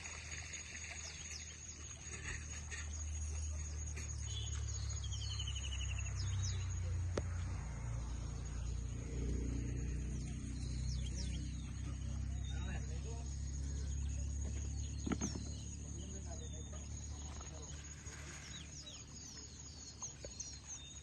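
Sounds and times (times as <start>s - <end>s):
birds chirping: 0.8s - 21.0s
steady low rumble: 4.4s - 19.7s.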